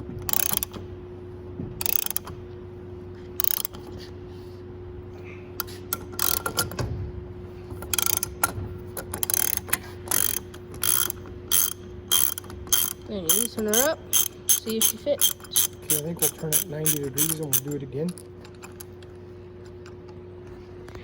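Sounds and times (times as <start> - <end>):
crimping tool clicking: 9.1 - 18.9.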